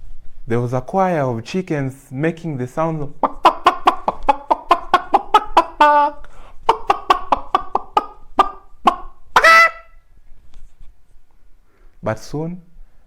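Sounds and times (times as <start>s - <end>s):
man imitating chicken clucking: 3.1s - 10.0s.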